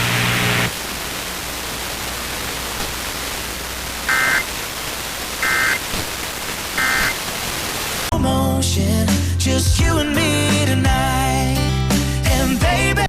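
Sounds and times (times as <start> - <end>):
static hiss: 0.0 - 8.1
shrill data bursts: 0.4 - 8.1.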